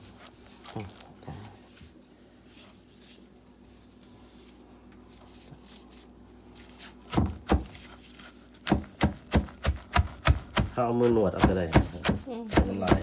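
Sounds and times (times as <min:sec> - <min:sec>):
pestle pounding in mortar: 0:07.1 - 0:07.8, 0:08.6 - 0:13.0.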